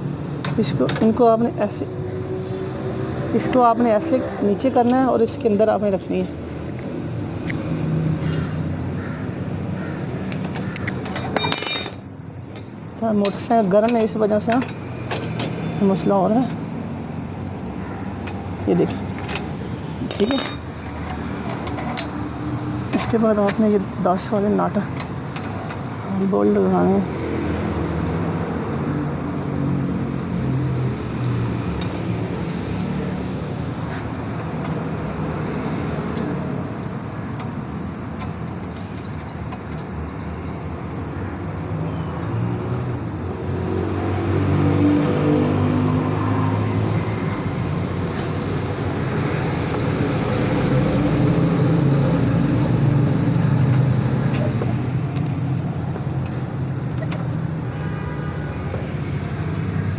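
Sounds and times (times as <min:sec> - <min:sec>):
passing road traffic: 0:00.0 - 0:59.9.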